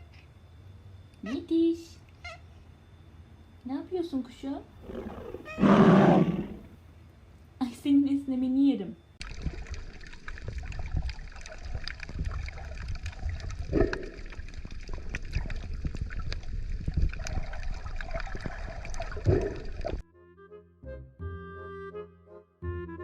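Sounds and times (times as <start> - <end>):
water splashing and trickling: 9.2 - 20.0.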